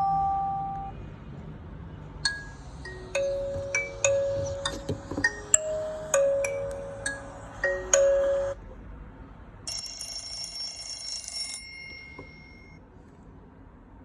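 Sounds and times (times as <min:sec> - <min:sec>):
bell-like ringtone melody: 0:00.0 - 0:01.0, 0:02.3 - 0:08.6, 0:09.7 - 0:12.8.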